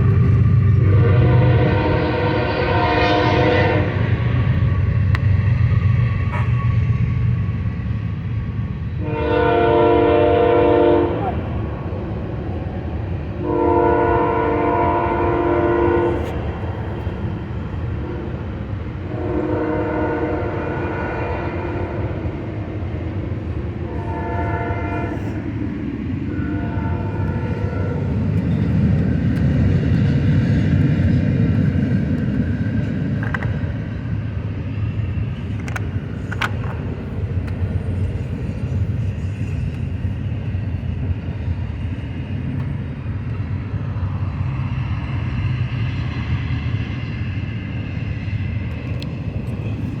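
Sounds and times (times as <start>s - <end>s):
vehicle engine rumble: 0.0s - 2.4s, 47.6s - 50.0s
horn-like tone: 9.0s - 11.3s, 13.4s - 16.3s.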